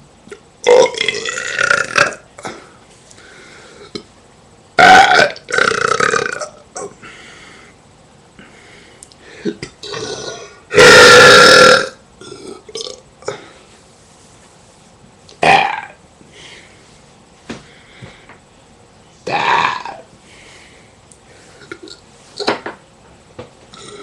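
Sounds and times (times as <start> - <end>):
person burping loudly: 0.6 - 2.6, 4.8 - 6.9, 9.4 - 13.4, 15.4 - 16.0, 19.3 - 20.1, 23.7 - 24.0.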